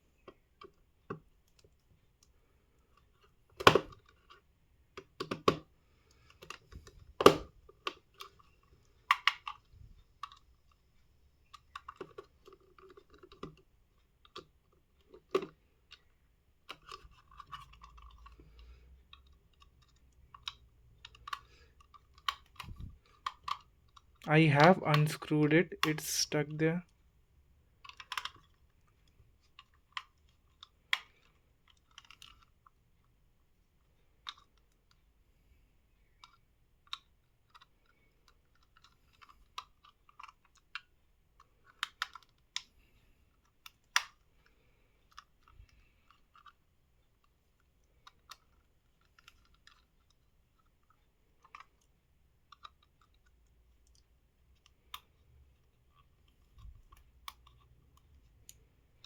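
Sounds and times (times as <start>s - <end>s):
plastic casing clicks and taps: 5.1s - 5.6s.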